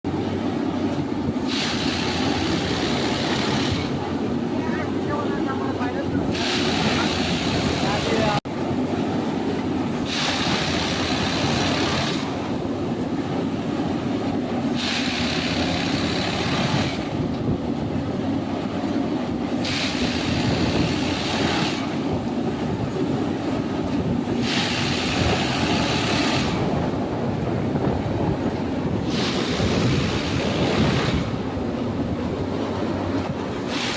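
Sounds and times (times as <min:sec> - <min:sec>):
machine engine drone: 0:00.1 - 0:33.9
hissing grinding noise: 0:01.4 - 0:04.1, 0:06.3 - 0:08.4, 0:10.0 - 0:12.5, 0:14.7 - 0:17.1, 0:19.6 - 0:22.1, 0:24.3 - 0:26.8, 0:29.0 - 0:31.4, 0:33.6 - 0:33.9.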